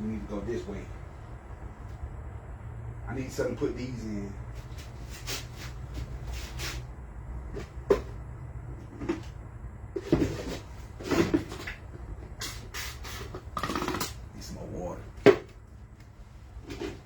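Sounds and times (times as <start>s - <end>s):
objects knocking and clattering: 13.4s - 14.2s.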